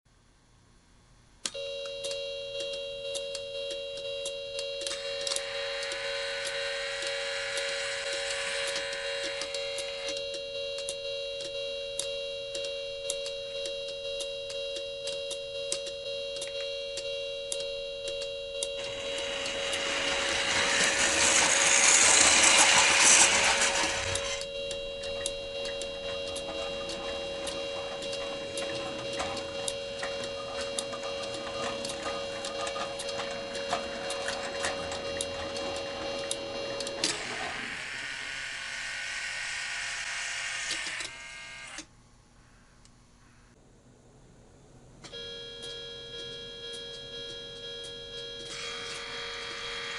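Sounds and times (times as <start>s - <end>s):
regular clicking: 1.4s - 37.4s
crossing signal alarm tone: 1.4s - 41.8s, 45.0s - 49.9s
model train rumble: 18.8s - 24.4s.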